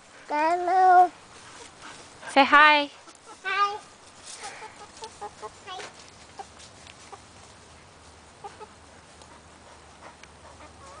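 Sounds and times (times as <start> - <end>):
hens clucking softly: 4.4 - 7.4, 8.4 - 11.0.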